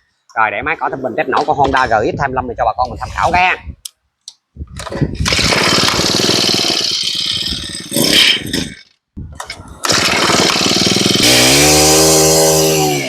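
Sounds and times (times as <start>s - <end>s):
brush-cutter engine revving: 4.8s - 8.9s, 9.8s - 13.0s.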